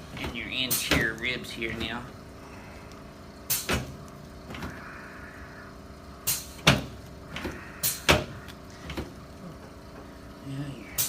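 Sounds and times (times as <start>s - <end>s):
chiropractic thumps and cracks: 0.0s - 2.0s, 3.5s - 4.8s, 6.3s - 9.2s.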